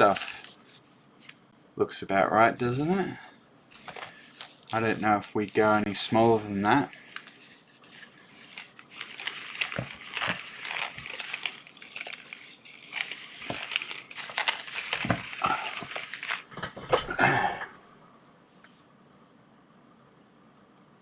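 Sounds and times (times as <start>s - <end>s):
plastic tubing rustling: 0.0s - 1.4s, 2.4s - 17.4s.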